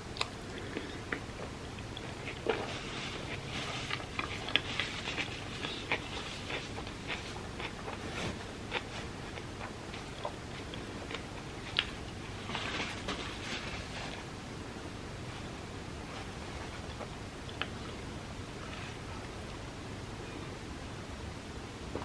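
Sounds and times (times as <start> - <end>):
chewing wet food: 0.1 - 12.2.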